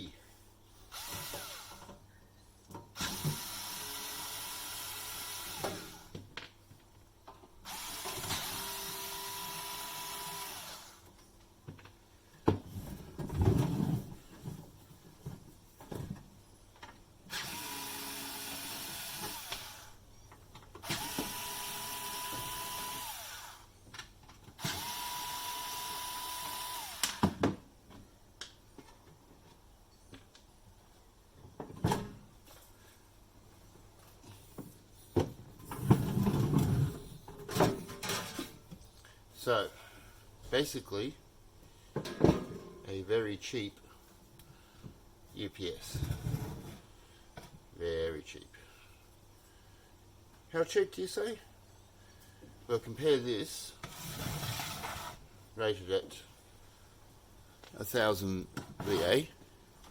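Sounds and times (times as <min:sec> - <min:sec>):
electric drill whining: 0:00.9 - 0:01.9, 0:03.0 - 0:06.1, 0:07.7 - 0:11.0, 0:17.3 - 0:19.9, 0:20.8 - 0:23.7, 0:24.6 - 0:27.4
knocks and clunks of parts: 0:31.4 - 0:32.3, 0:34.6 - 0:38.8, 0:42.0 - 0:42.9.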